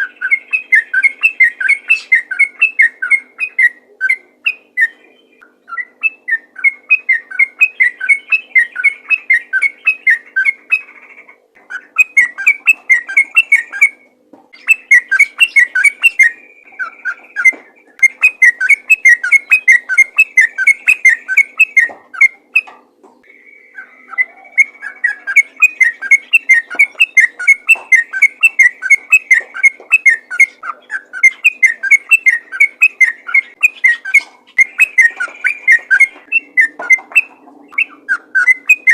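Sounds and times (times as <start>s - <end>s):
bulbul singing bubbly whistled notes: 14.6s - 38.9s.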